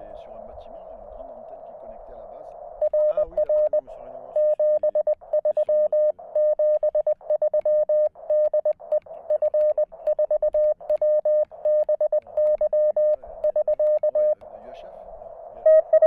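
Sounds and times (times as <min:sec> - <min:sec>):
morse code beeps: 0:02.8 - 0:03.8, 0:04.4 - 0:14.4, 0:15.6 - 0:16.0
receiver hiss: 0:12.3 - 0:16.0.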